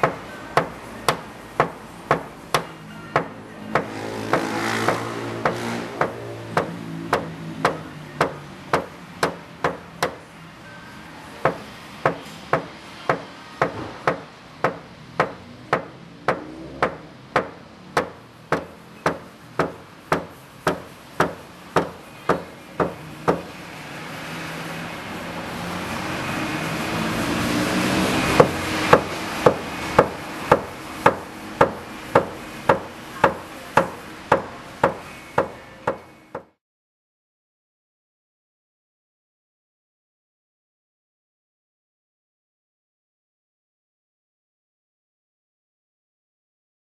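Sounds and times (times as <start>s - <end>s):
music with tapping beat: 0.0s - 10.2s, 11.4s - 23.5s, 29.5s - 36.6s.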